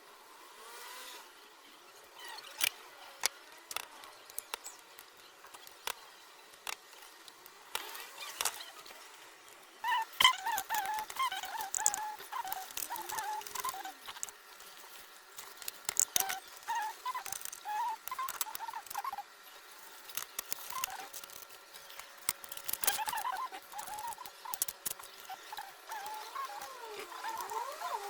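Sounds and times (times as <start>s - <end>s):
small birds twittering: 7.8s - 28.0s.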